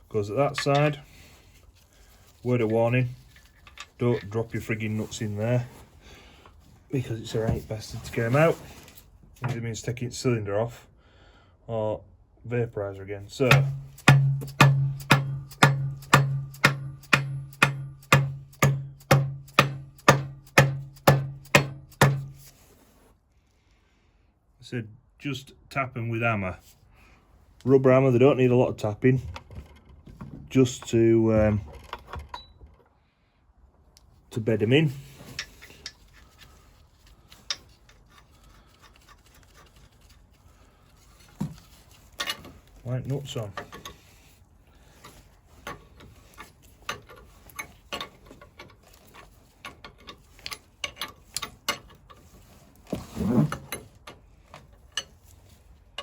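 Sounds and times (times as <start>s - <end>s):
small metal parts clicking: 45.6s - 52.2s.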